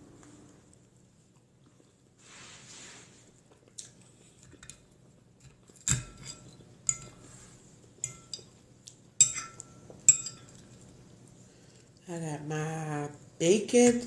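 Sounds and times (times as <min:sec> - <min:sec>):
cutlery clinking against plate: 0:05.4 - 0:07.2, 0:08.0 - 0:08.5, 0:09.2 - 0:10.7.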